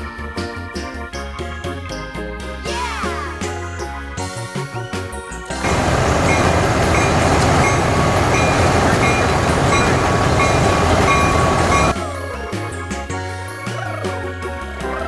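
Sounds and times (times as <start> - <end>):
train rumbling: 5.5 - 12.0.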